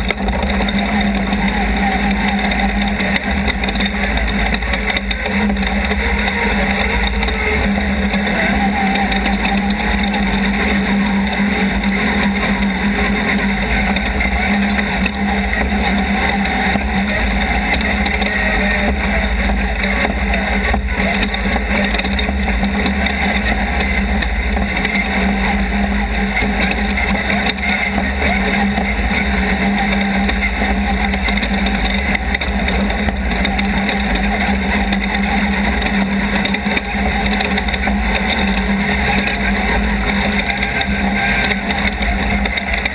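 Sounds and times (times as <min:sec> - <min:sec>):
race car engine droning: 0:00.0 - 0:42.9
rush of driving noise: 0:00.0 - 0:42.9.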